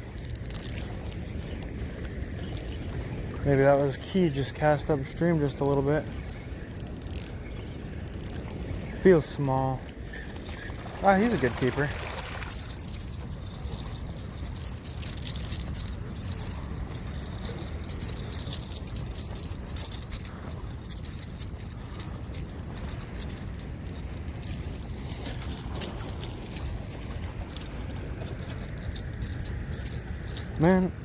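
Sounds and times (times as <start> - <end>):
fishing lure rattling: 0.1 - 1.7, 3.7 - 31.0
fish flopping: 9.9 - 30.6.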